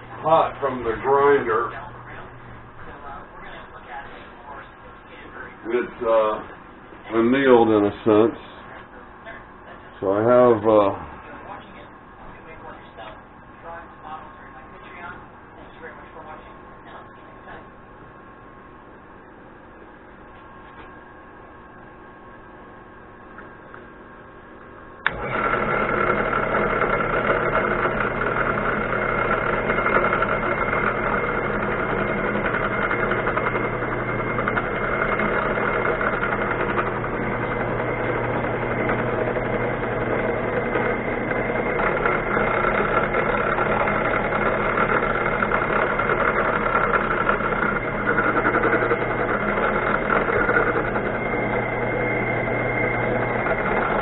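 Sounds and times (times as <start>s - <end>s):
electric motor humming and whining: 0.0s - 8.7s, 25.0s - 54.0s.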